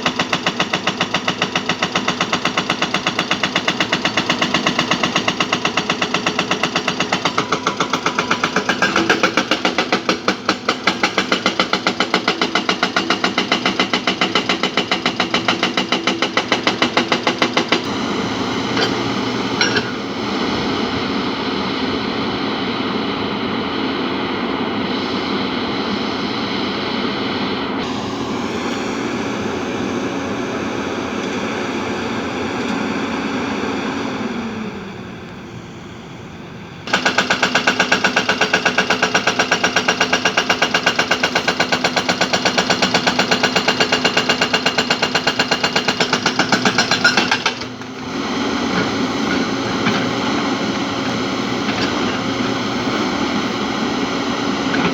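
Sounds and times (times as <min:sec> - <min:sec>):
diesel engine knocking: 0:00.0 - 0:17.9, 0:36.9 - 0:48.0.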